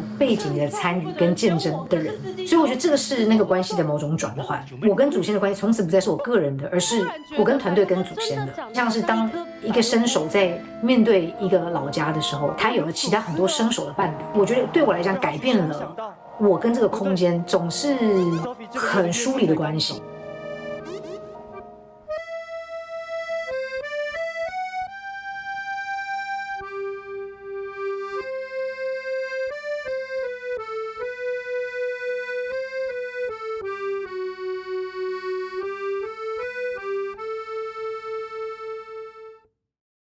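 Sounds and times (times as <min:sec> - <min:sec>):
reedy solo melody: 0:06.8 - 0:38.7.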